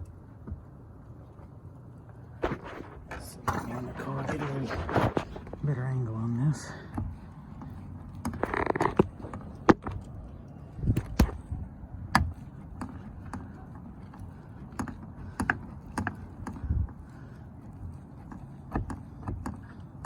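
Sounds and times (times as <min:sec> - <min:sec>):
handling rustle: 0:01.3 - 0:20.0.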